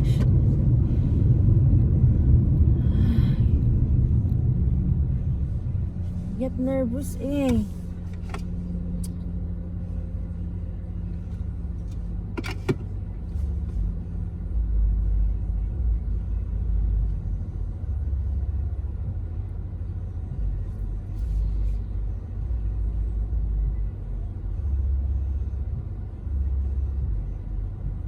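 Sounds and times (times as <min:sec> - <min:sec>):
car engine and road rumble: 0:00.0 - 0:28.0.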